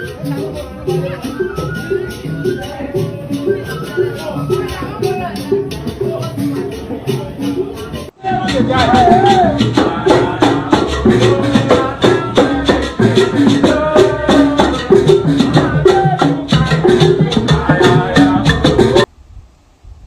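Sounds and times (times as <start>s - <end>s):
upbeat music with percussion beat: 0.0s - 19.1s.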